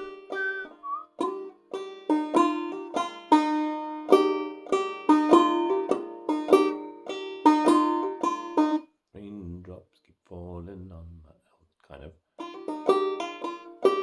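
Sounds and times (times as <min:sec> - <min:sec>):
banjo picking: 0:00.0 - 0:09.6, 0:12.4 - 0:14.0.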